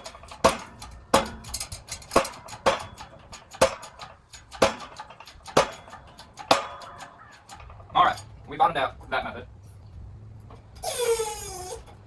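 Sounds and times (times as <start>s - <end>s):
sharp metallic clicks and pops: 0.0s - 9.2s.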